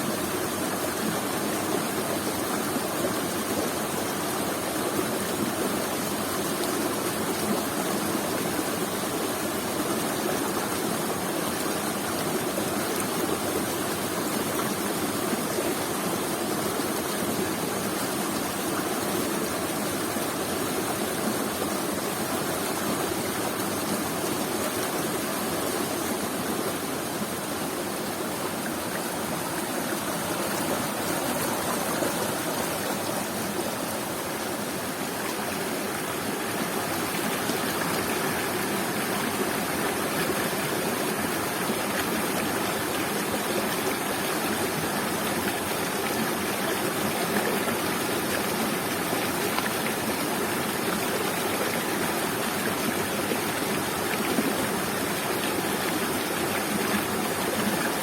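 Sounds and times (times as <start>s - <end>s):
waterfall rushing: 15.8s - 58.0s.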